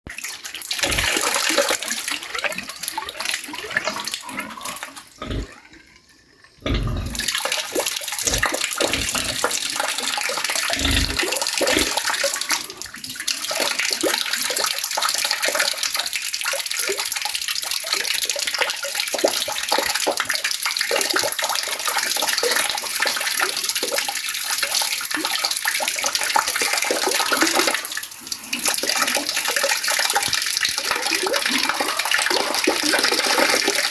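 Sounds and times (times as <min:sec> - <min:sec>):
water falling and splashing: 0:00.3 - 0:05.4, 0:06.7 - 0:12.9.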